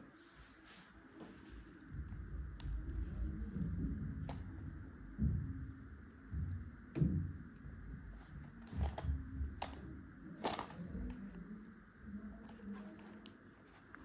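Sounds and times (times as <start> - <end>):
packet handling clicks and rustles: 8.2 - 11.4.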